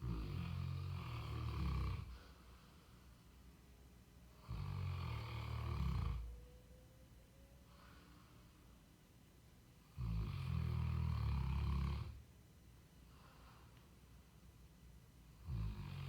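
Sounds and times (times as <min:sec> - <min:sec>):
dog snoring: 0:00.0 - 0:02.3, 0:04.4 - 0:06.6, 0:09.8 - 0:12.2, 0:15.4 - 0:16.0.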